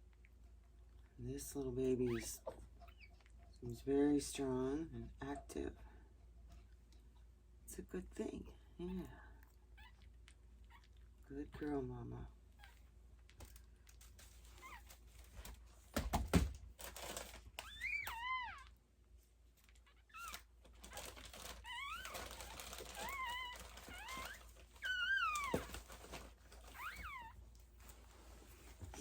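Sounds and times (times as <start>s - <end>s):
puppy squealing: 2.1s - 3.4s, 17.6s - 18.7s, 19.9s - 25.8s, 26.7s - 27.4s.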